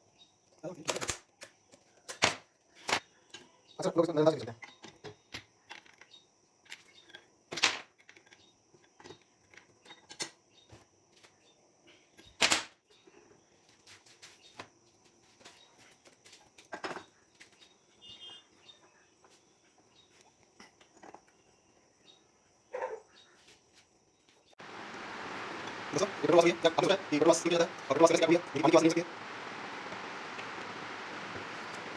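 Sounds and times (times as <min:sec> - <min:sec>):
metal tools clicking and knocking: 0:04.6 - 0:10.4.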